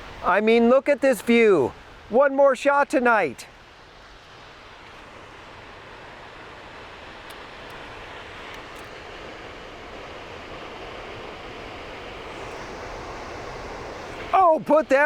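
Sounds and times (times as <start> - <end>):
waterfall roaring: 4.4 - 15.0.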